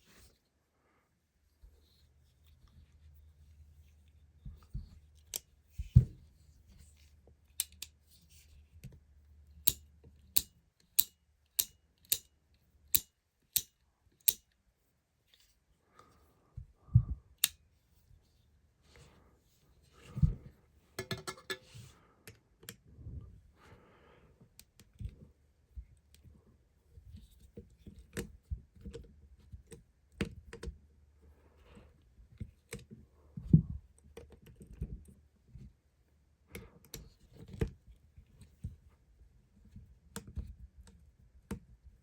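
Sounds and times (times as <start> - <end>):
small metal clicks and knocks: 7.5 - 8.0, 9.6 - 14.6, 21.0 - 22.8.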